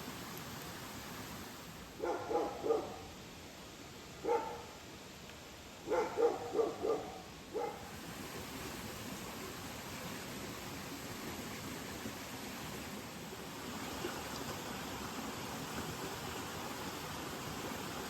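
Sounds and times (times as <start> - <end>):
steady background hiss: 0.0 - 18.0
dog barking: 2.0 - 3.1, 4.2 - 4.8, 5.8 - 7.9.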